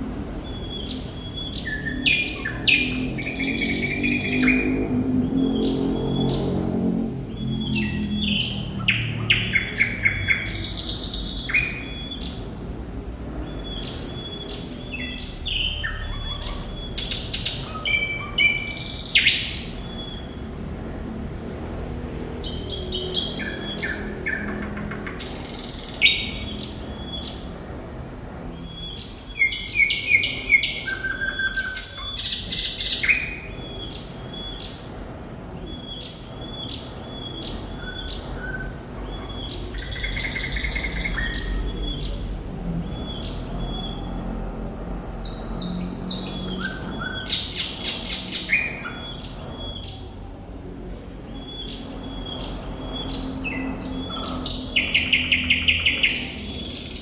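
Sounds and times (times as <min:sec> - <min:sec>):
nightingale singing: 0:00.1 - 0:06.5, 0:07.3 - 0:12.7, 0:13.4 - 0:20.4, 0:35.6 - 0:44.3, 0:45.2 - 0:50.1, 0:51.4 - 0:57.0.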